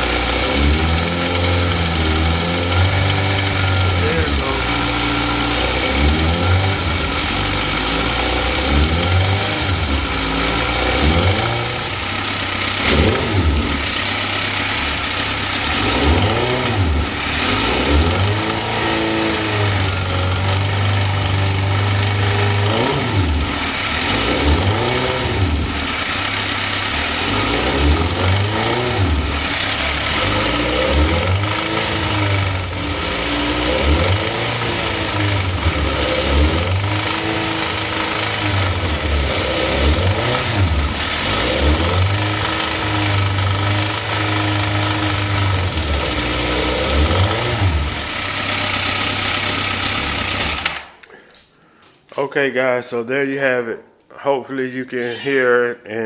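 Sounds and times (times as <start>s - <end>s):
engine rattling: 0.0s - 51.0s
motorcycle engine revving: 0.0s - 51.2s.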